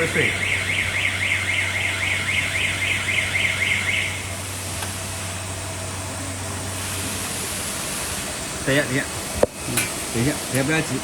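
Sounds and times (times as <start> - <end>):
warbling alarm siren: 0.0 - 4.5.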